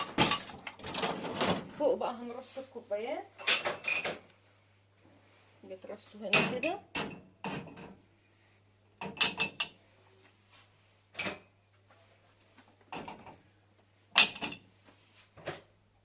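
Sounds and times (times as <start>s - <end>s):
cups clinking in dishwasher rack: 0.0s - 1.1s, 3.4s - 4.2s, 9.0s - 9.8s, 14.2s - 14.7s.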